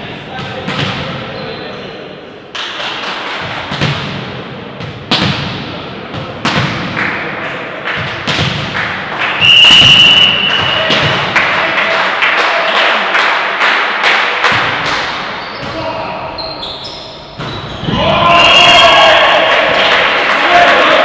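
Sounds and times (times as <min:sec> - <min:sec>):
referee's whistle: 0:09.4 - 0:11.1, 0:16.4 - 0:19.1.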